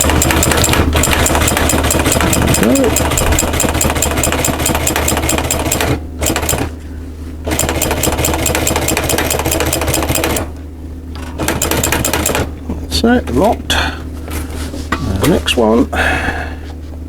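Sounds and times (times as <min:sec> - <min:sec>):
sewing machine stitching: 0:00.0 - 0:06.7, 0:07.5 - 0:10.5, 0:11.2 - 0:12.5.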